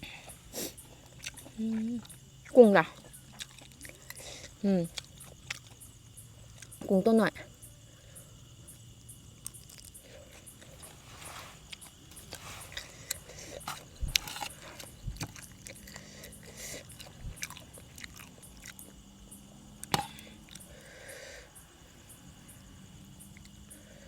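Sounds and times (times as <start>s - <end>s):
faint crickets chirping: 0.0s - 24.0s
person chewing food: 0.2s - 6.8s, 9.4s - 19.1s, 19.8s - 21.0s.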